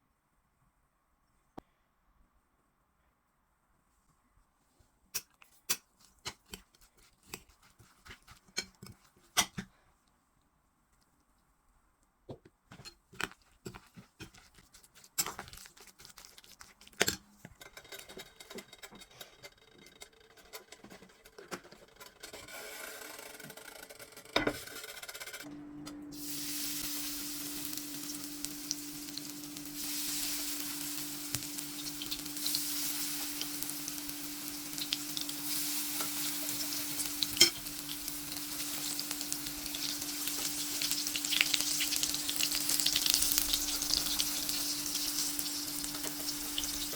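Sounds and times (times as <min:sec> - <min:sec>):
food sizzling in a pan: 0:26.1 - 0:46.9.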